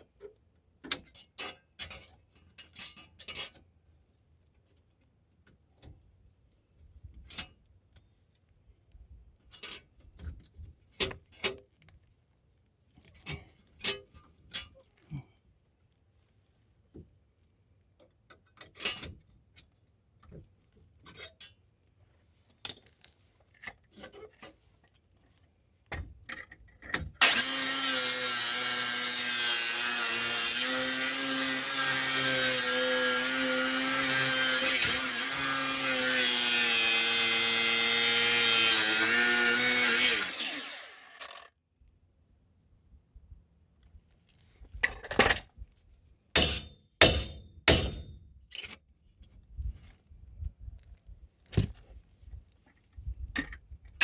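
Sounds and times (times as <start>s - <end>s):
power tool running with hiss: 27.2s - 34.4s.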